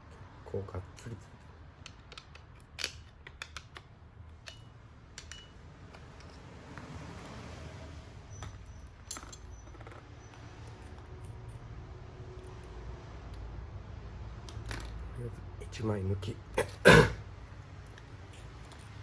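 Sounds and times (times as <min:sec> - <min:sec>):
metallic tool clicks and clinks: 0:01.0 - 0:06.4, 0:08.3 - 0:09.9.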